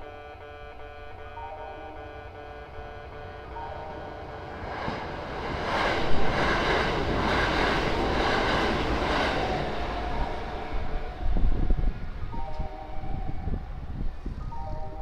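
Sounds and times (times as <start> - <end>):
crossing bell ringing: 0.0 - 5.4, 9.7 - 15.0
train running over crossing: 0.0 - 15.0.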